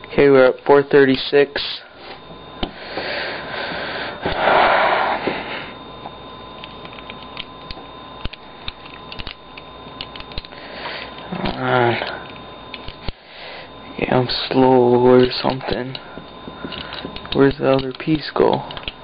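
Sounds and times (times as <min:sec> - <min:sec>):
rush of breath: 0:02.8 - 0:05.8.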